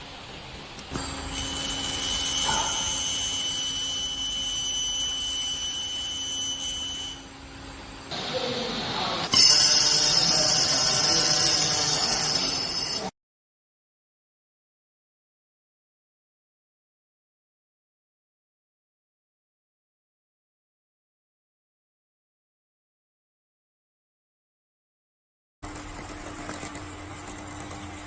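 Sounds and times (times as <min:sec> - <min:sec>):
low machine hum: 0:00.0 - 0:11.3
high-pitched machine whine: 0:00.8 - 0:13.1
loud welding hiss: 0:09.3 - 0:13.1.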